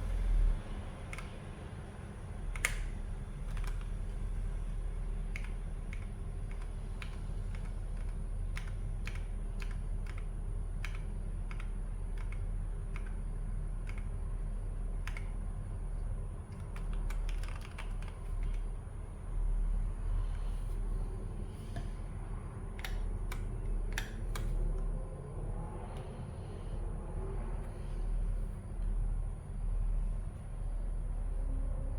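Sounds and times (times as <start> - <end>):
mechanical keyboard key clicks: 2.6 - 3.9, 5.3 - 13.2, 15.0 - 15.3, 16.5 - 18.6.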